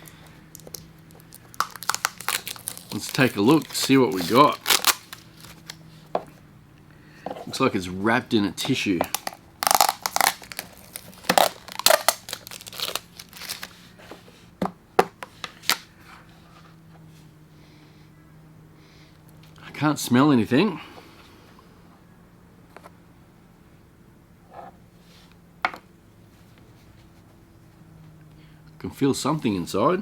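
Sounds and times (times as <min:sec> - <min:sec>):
tissue paper crinkling: 0:00.0 - 0:05.8, 0:09.1 - 0:14.0
faint steady hum: 0:00.0 - 0:30.0.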